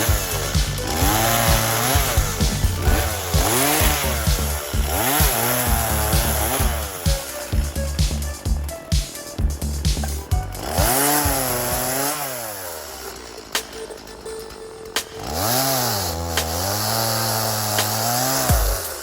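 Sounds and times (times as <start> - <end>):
chainsaw revving: 0.0 - 7.8, 10.5 - 13.6, 15.2 - 19.0
background music: 0.0 - 19.0.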